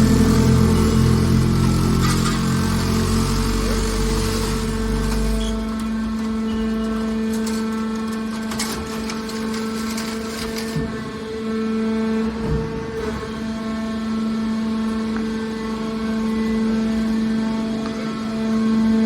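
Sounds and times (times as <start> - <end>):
deep machine rumble: 0.0 - 8.6
baler machine hum: 0.0 - 19.0.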